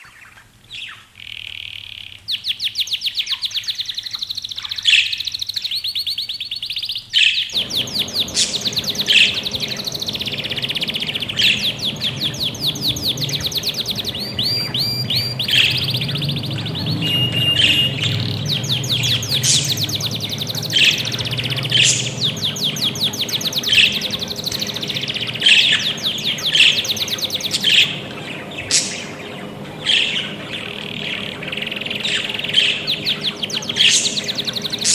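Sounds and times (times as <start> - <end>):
budgerigars chirping: 7.6 - 34.9
low steady hum: 7.6 - 34.9.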